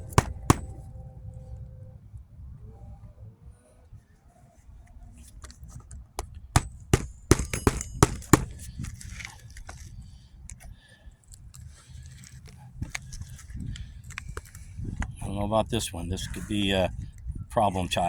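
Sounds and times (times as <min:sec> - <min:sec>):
hammer driving nails into shingle: 0:00.0 - 0:00.8, 0:06.2 - 0:09.2
small knocks and scrapes: 0:07.6 - 0:10.7.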